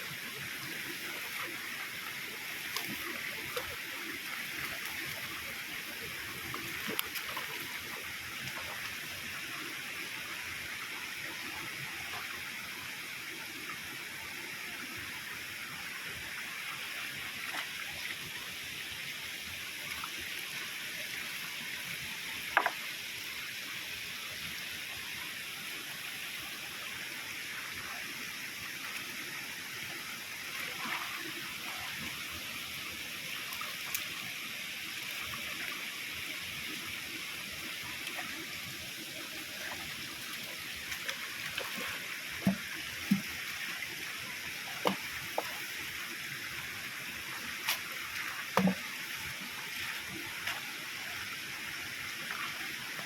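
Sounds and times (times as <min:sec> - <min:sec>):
spring water splashing: 0:36.6 - 0:53.0.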